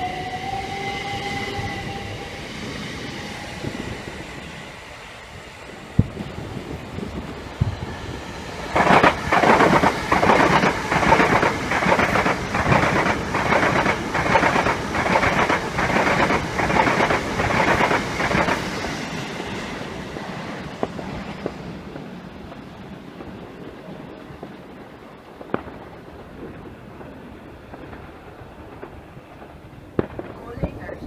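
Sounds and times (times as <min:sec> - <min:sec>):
train wheels clattering over rails: 0:07.2 - 0:23.8.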